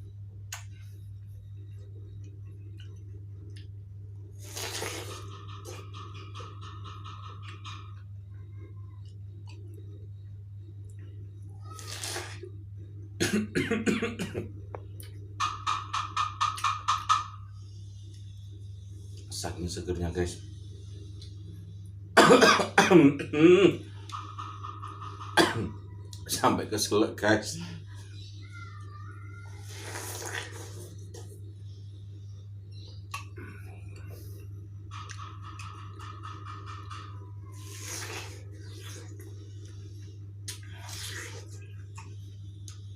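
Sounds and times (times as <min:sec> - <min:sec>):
chewing watermelon: 0:04.4 - 0:07.6, 0:29.6 - 0:31.3, 0:34.9 - 0:42.9
low hum: 0:14.2 - 0:26.3
man coughing: 0:22.2 - 0:23.8.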